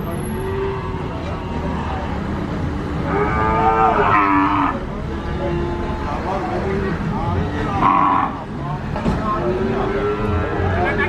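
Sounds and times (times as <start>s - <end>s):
cattle mooing: 3.0s - 4.8s, 7.7s - 8.4s.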